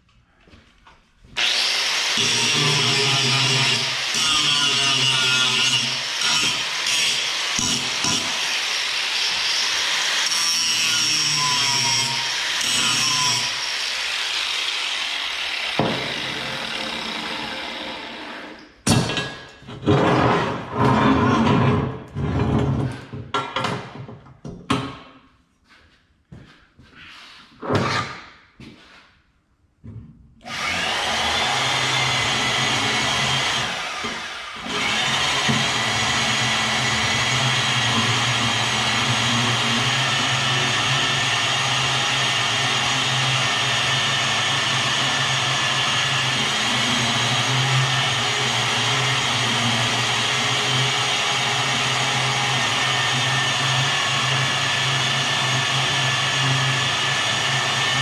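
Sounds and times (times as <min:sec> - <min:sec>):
electric power tool humming: 0:01.4 - 0:18.4, 0:30.5 - 0:58.0.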